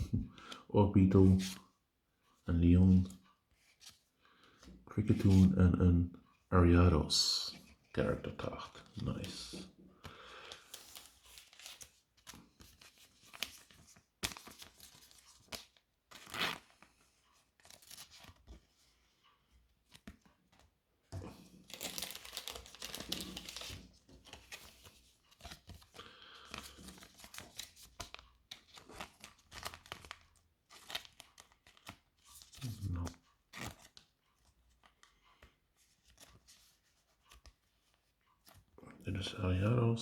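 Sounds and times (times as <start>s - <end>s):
plastic crinkling and rustling: 21.2s - 34.0s.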